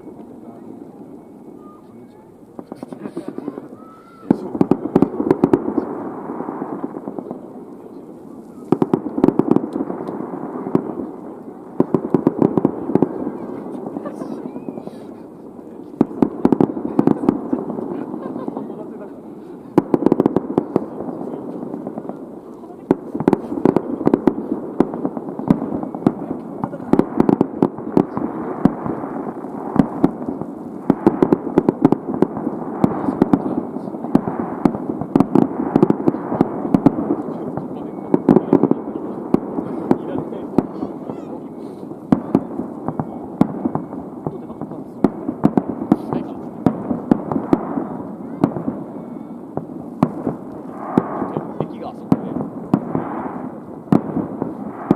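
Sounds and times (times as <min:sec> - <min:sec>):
fireworks bangs: 0:00.0 - 0:54.9
low rumble of fireworks: 0:00.0 - 0:54.9.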